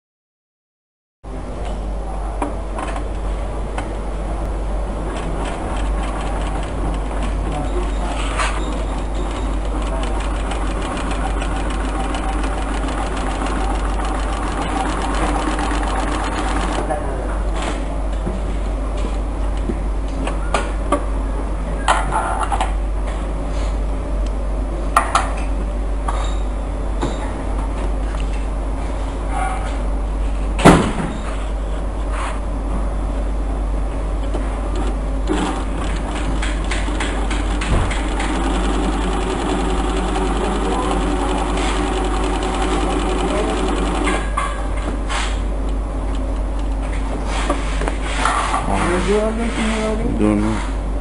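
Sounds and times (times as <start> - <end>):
steady low hum: 1.3 - 20.2, 31.8 - 51.0
sewing machine stitching: 5.2 - 17.0, 35.3 - 44.4.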